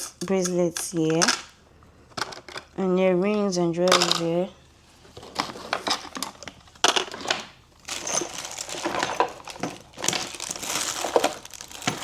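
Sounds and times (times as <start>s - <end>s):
jewelry and packaging clicking: 5.3s - 12.0s.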